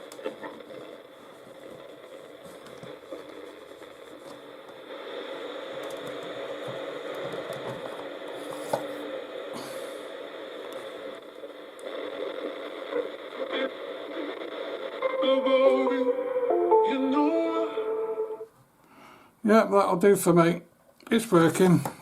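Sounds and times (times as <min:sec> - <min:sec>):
radio static hiss: 0:00.0 - 0:16.6
music from radio: 0:10.1 - 0:18.4.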